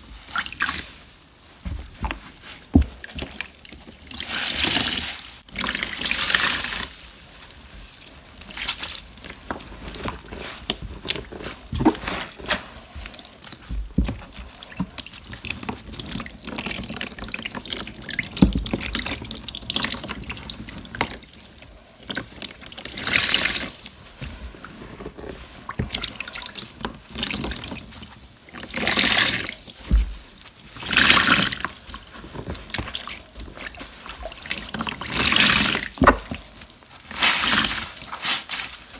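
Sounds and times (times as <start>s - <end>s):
water dripping and trickling: 7.9s - 23.9s, 25.4s - 38.2s
water splashing and pouring: 25.4s - 38.9s.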